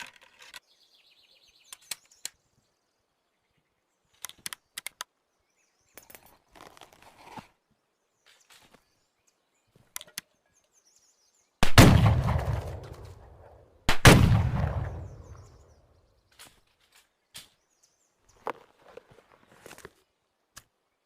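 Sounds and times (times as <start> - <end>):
shotgun blasts with rolling echo: 11.6 - 15.6.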